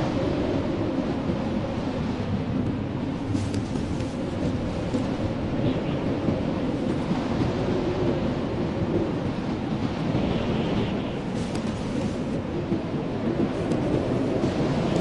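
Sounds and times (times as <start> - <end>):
blizzard wind rumbling: 0.0 - 15.0.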